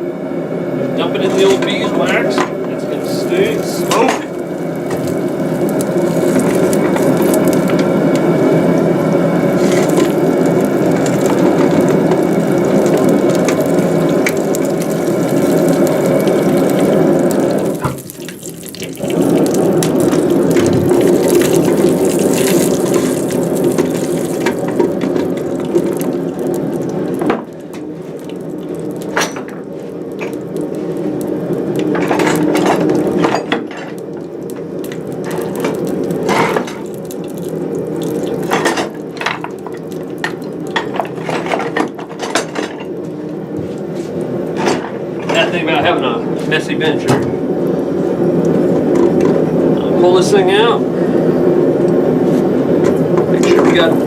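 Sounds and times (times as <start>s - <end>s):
hot metal sizzling in wax: 2.7s - 41.8s
crackles: 2.8s - 45.8s.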